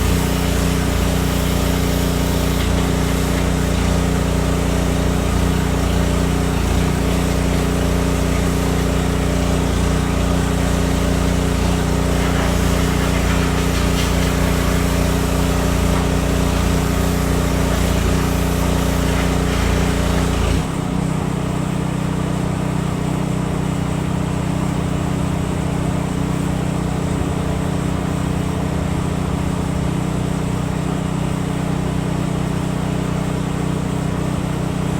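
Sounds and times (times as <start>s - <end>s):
hiss: 0.0s - 9.4s, 10.2s - 20.6s
motor hum: 0.0s - 22.1s.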